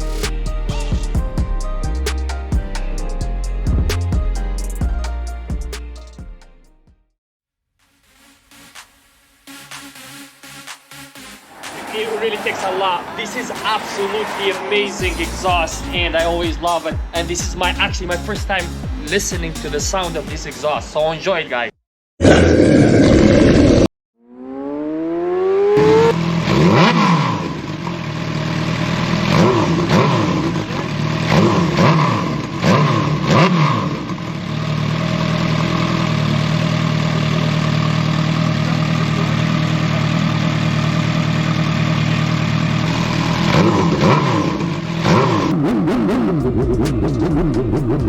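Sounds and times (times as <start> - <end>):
motorcycle engine revving and idling: 24.4 - 48.0.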